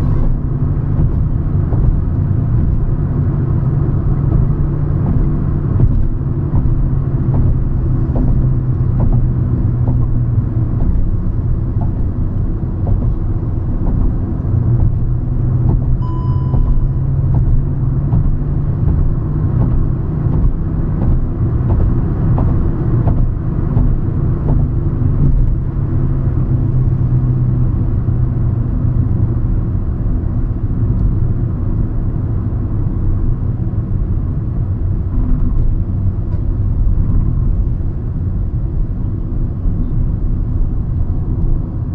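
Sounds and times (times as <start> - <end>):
car engine and tyre rumble: 0.0 - 41.9
short high beep: 16.0 - 17.2.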